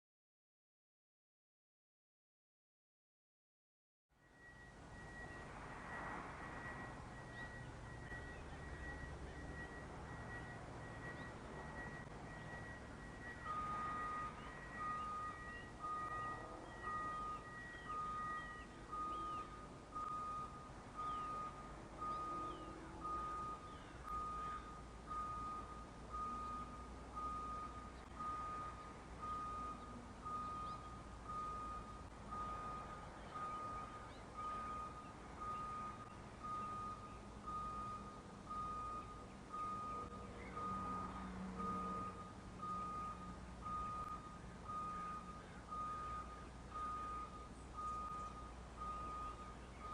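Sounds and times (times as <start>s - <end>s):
backup alarm beeping: 4.2s - 49.9s.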